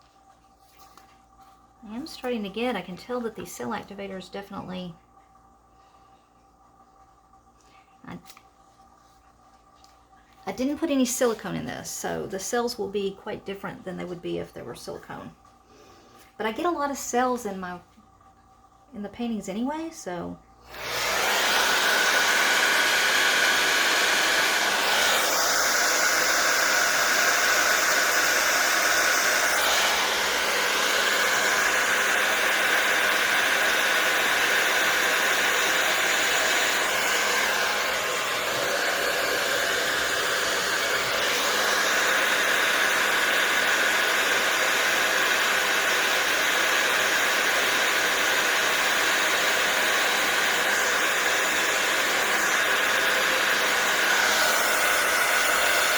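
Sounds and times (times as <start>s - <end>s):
hair dryer blowing: 1.9s - 4.4s, 20.6s - 55.9s.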